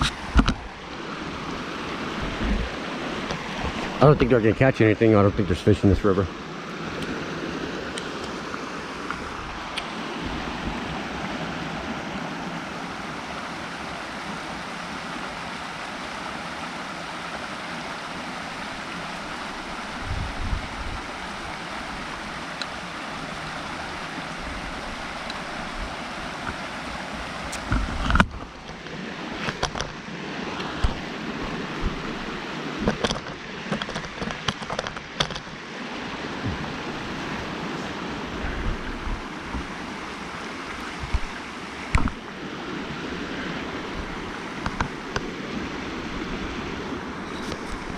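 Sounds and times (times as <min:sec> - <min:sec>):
wind gusts on microphone: 0:00.0 - 0:15.6, 0:18.9 - 0:47.9
water flowing in a creek: 0:00.0 - 0:47.9.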